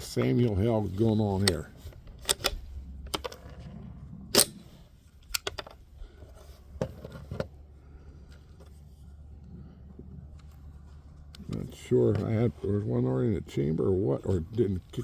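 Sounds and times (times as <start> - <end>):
rifle action clicking: 1.4 - 3.4, 4.3 - 5.8.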